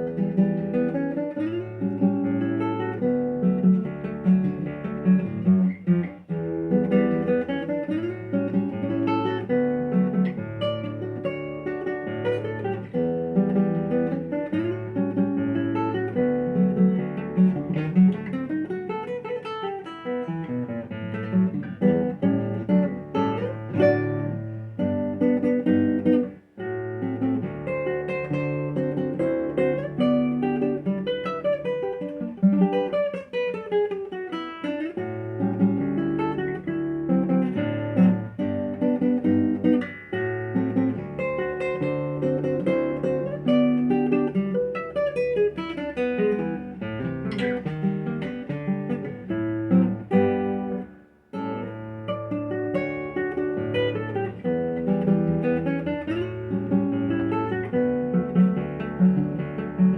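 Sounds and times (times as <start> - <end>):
fingerpicked classical guitar: 0.0 - 59.9.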